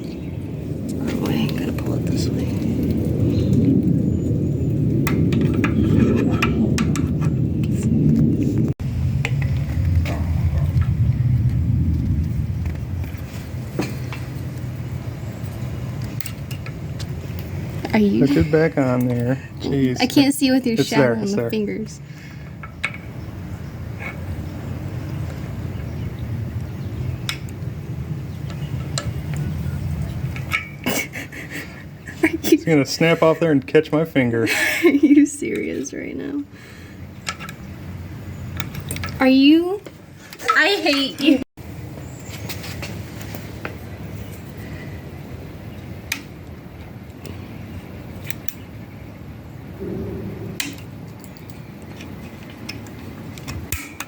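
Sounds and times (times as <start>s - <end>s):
low hum: 0.0s - 32.3s, 49.1s - 52.5s
steady low hum: 43.8s - 52.6s.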